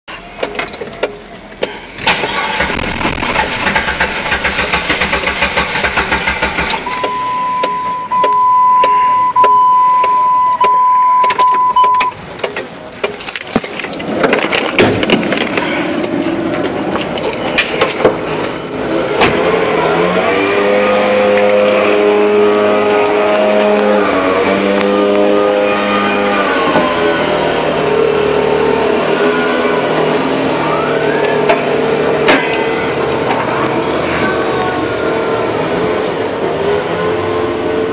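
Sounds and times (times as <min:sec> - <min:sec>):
starter cranking: 0:02.0 - 0:07.2
car warning chime: 0:06.8 - 0:12.2
keys rattling at ignition: 0:11.2 - 0:20.1, 0:21.5 - 0:23.6
droning tones shifting in steps: 0:15.3 - 0:37.9.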